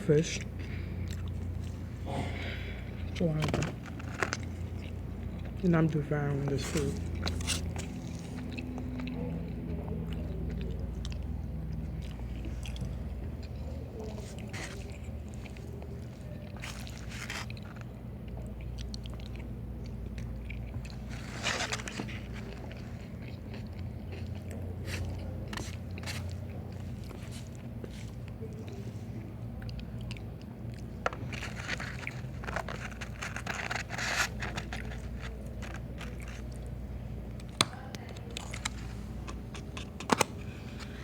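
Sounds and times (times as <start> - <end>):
steady low hum: 0.0 - 41.0
chewing and biting food: 0.4 - 2.0, 2.7 - 41.0.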